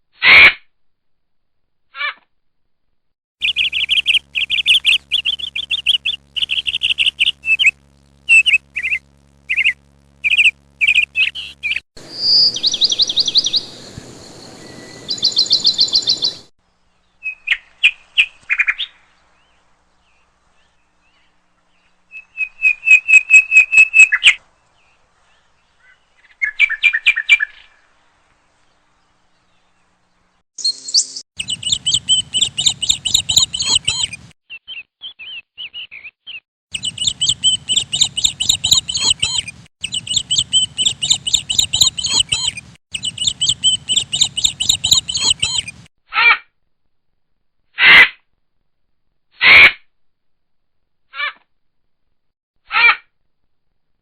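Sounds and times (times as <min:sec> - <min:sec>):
small birds chirping: 0:03.4 - 0:45.9.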